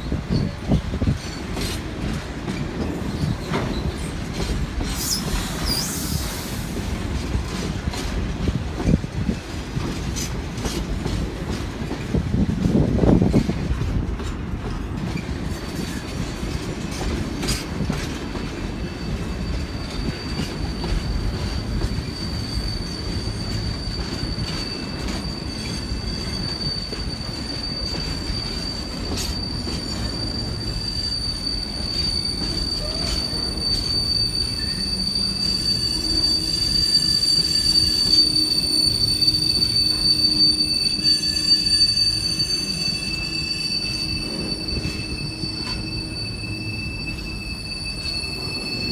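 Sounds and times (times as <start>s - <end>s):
wind buffeting microphone: 0.0s - 25.2s
train wheels squealing: 0.0s - 48.9s.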